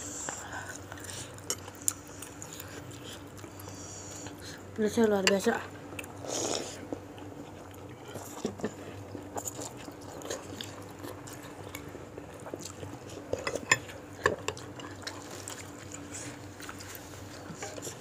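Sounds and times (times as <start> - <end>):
cutlery clinking in a bowl: 13.4 - 14.6.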